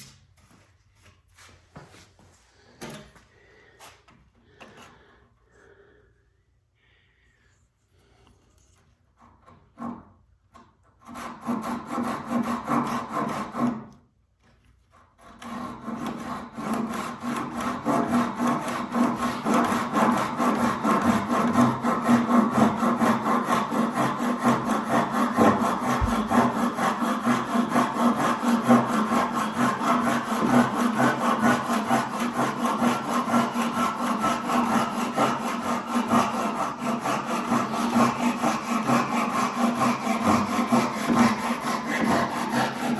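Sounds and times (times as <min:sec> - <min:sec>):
hand saw cutting wood: 0:08.6 - 0:42.9.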